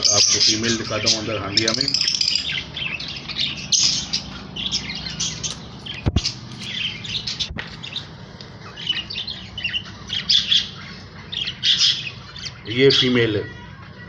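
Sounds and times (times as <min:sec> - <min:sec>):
low steady hum: 0:00.0 - 0:12.8
pet birds chirping: 0:00.0 - 0:14.0
dull bump: 0:05.9 - 0:07.8.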